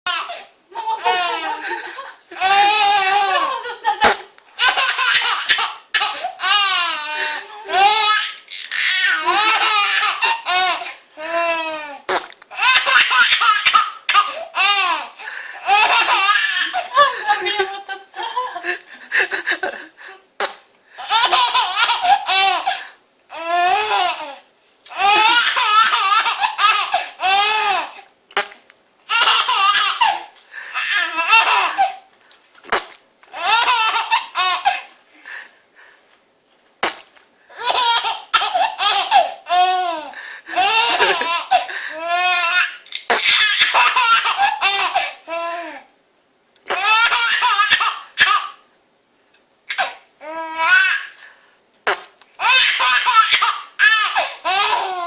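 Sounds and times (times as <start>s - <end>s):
baby laughing hysterically: 0.1s - 11.9s, 12.5s - 19.8s, 21.0s - 28.0s, 29.1s - 32.1s, 33.4s - 34.9s, 37.5s - 45.4s, 46.7s - 48.6s, 49.7s - 50.0s, 52.4s - 55.0s.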